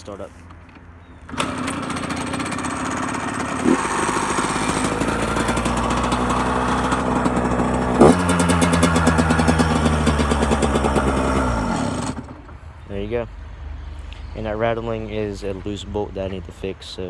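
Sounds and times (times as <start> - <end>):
dirt bike engine revving: 1.3 - 12.5.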